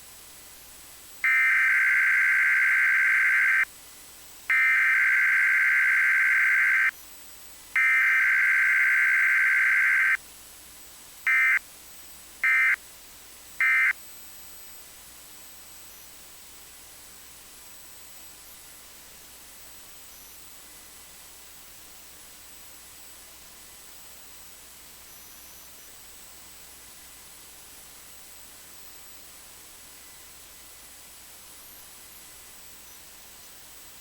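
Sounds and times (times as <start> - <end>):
digital data bursts: 1.2 - 3.6, 4.5 - 6.9, 7.8 - 10.2
radio hiss: 1.2 - 3.8, 4.4 - 10.2, 11.2 - 11.6, 12.4 - 12.8, 13.5 - 14.0.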